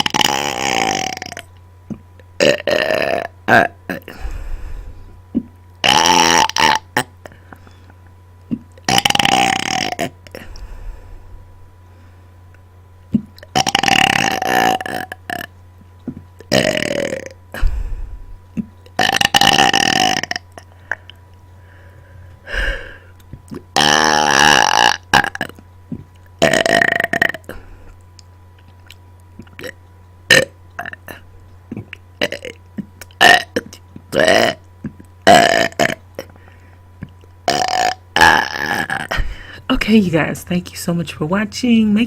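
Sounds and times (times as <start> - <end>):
person belching: 0.0 - 1.5, 2.4 - 4.3, 5.4 - 7.4, 8.5 - 10.6, 13.2 - 15.5, 16.1 - 17.9, 18.6 - 21.2, 22.6 - 27.6, 29.4 - 36.3, 37.4 - 39.6.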